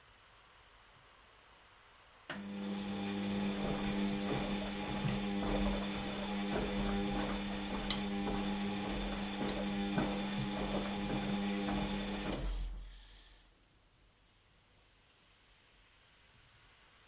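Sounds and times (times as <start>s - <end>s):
washing machine motor humming: 2.3s - 13.4s
drum knocking: 3.5s - 12.4s.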